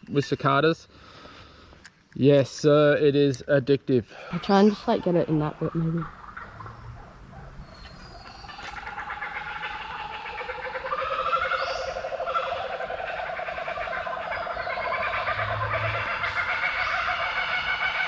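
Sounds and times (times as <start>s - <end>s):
birds calling: 4.1s - 18.0s.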